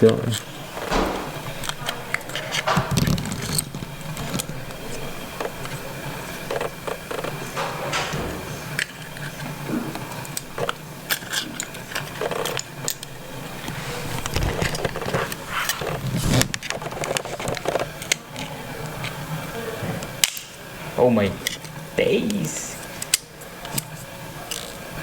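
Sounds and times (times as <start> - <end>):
steady low hum: 0.0 - 22.0
small tools clicking and scraping: 1.6 - 5.8, 10.2 - 13.1.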